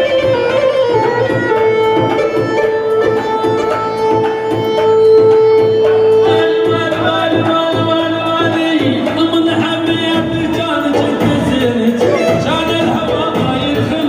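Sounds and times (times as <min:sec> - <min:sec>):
steady drum beat: 0:00.0 - 0:14.0
lead instrument long note: 0:12.0 - 0:13.1.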